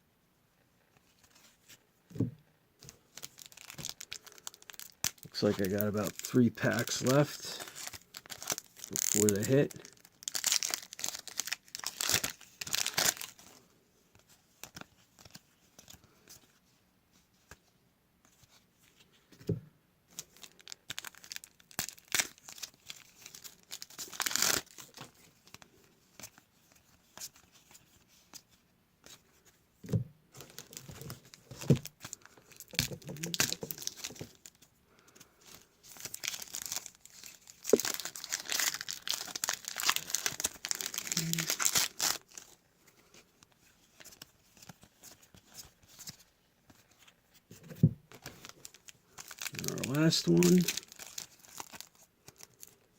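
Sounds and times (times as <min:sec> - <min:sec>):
card wrappers tearing and crinkling: 0:03.1 - 0:13.6, 0:20.1 - 0:28.4, 0:30.4 - 0:34.7, 0:35.4 - 0:42.6, 0:43.7 - 0:46.8, 0:48.1 - 0:52.9.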